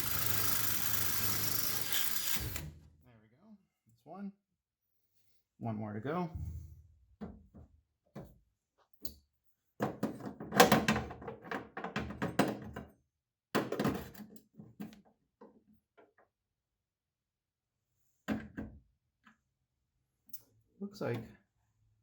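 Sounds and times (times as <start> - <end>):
cordless drill boring fiberglass: 0.0 - 2.8.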